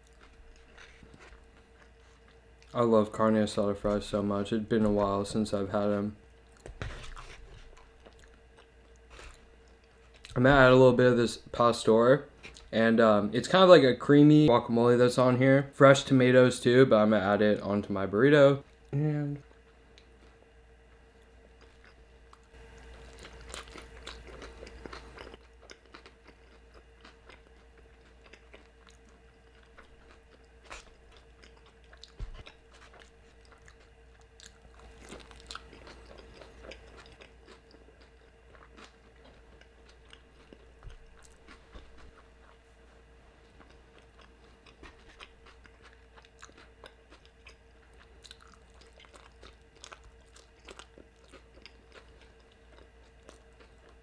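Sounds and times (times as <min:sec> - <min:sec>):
person chewing food: 0:00.0 - 0:02.8, 0:06.3 - 0:10.7, 0:19.5 - 0:54.0
faint steady hum: 0:00.0 - 0:54.0.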